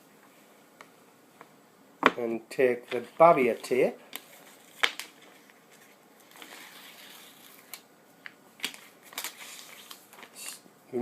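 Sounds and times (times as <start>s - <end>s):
tape rustling: 2.8s - 10.6s.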